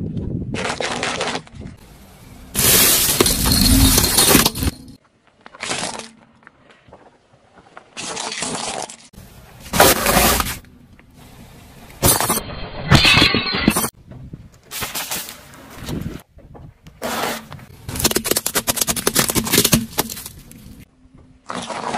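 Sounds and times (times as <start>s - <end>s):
objects crushed under car tyre: 2.5s - 5.0s.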